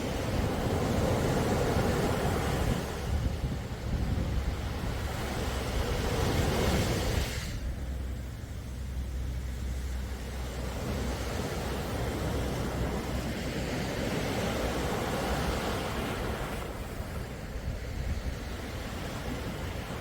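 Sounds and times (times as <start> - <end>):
surf hissing on shore: 0.0 - 20.0
steady low rumble: 2.8 - 14.2.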